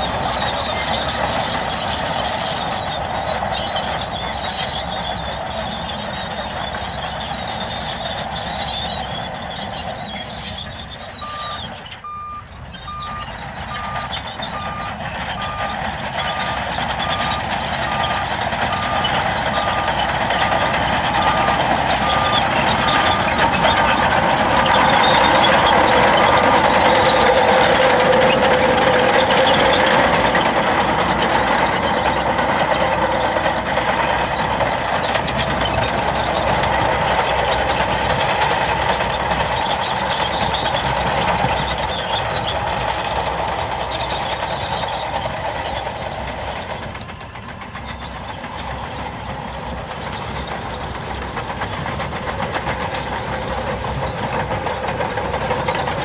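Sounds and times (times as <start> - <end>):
diesel truck engine: 0.0 - 56.0
truck reversing alarm beeping: 0.0 - 56.0.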